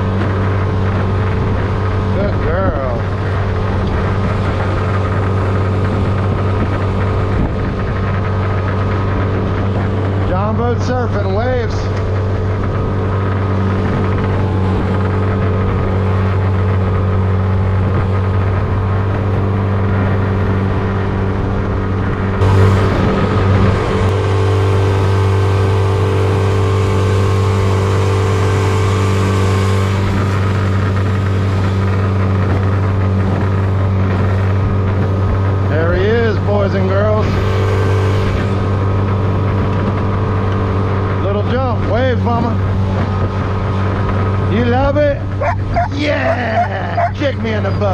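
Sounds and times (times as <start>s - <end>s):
outboard motor running: 0.0s - 47.9s.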